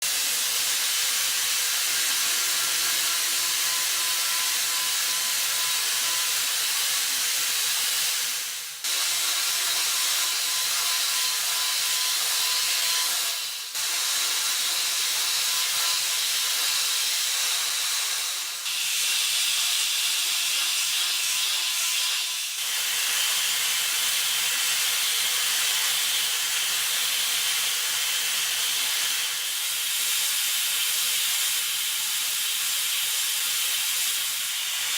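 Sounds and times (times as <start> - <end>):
high-speed spindle whine: 0.1 - 7.1.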